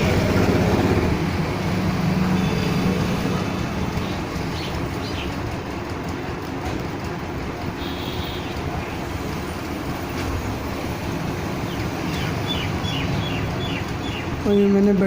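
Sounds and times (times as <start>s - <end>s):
road traffic noise: 0.0s - 15.0s
bird chirping: 4.0s - 5.4s, 11.6s - 14.9s.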